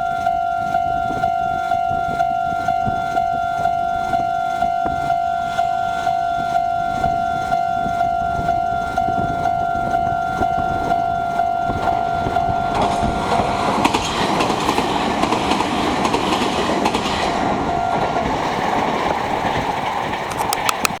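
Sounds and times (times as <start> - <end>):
level crossing warning bell: 0.0 - 13.8
train wheels clattering over rail joints: 11.7 - 21.0.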